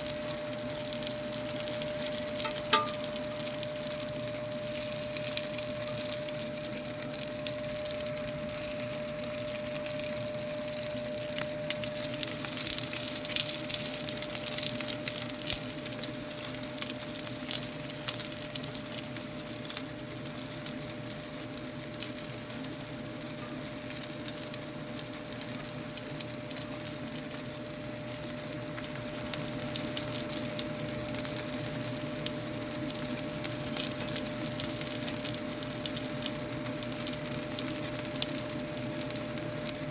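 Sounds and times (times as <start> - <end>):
steady hum: 0.0 - 13.2
dumplings sizzling in oil: 0.0 - 39.9.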